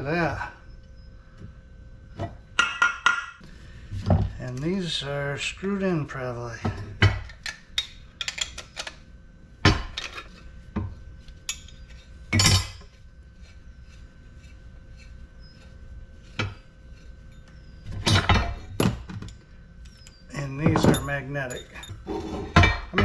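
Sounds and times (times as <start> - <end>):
metal parts clinking: 18.2 - 22.1.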